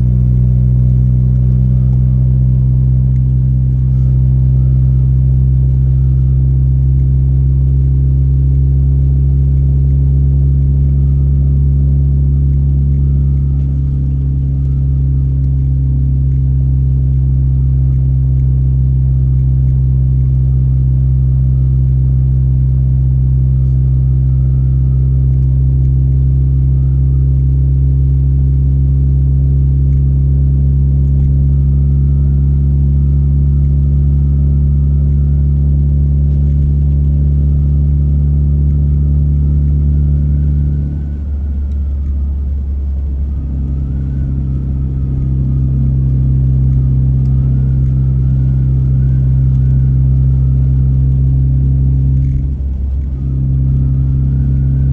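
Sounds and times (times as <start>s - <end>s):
car engine and road noise: 0.0s - 54.9s.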